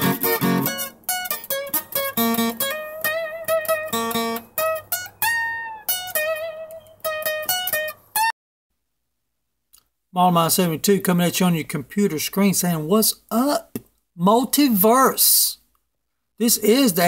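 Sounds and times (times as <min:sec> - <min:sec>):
plucked guitar notes: 0:00.0 - 0:08.3.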